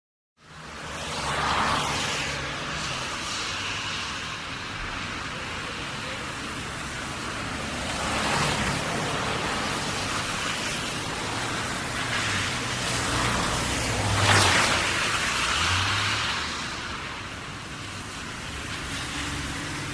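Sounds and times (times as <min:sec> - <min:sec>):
traffic wash: 0:00.4 - 0:19.9
tyres hissing on wet road: 0:00.4 - 0:19.9.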